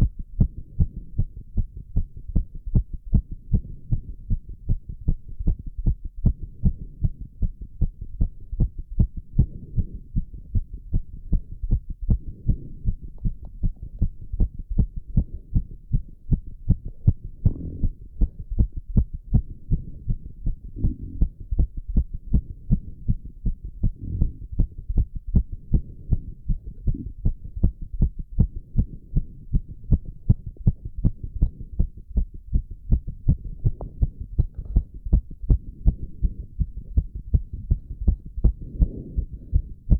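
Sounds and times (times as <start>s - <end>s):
heart beating fast: 0.0s - 39.9s
heavy breathing: 38.5s - 39.9s.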